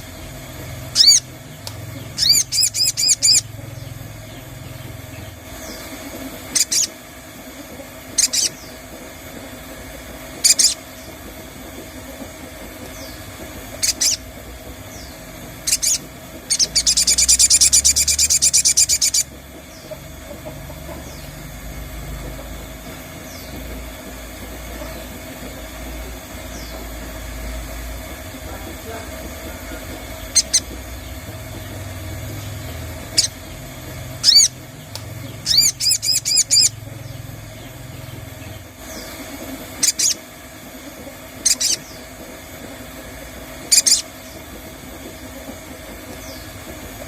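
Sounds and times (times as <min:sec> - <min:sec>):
jay calling: 0:00.8 - 0:04.9, 0:05.6 - 0:07.0, 0:07.6 - 0:08.8, 0:10.4 - 0:11.1, 0:12.0 - 0:21.3, 0:28.4 - 0:31.2, 0:32.6 - 0:37.2, 0:38.8 - 0:40.3, 0:40.9 - 0:42.1, 0:43.6 - 0:44.5.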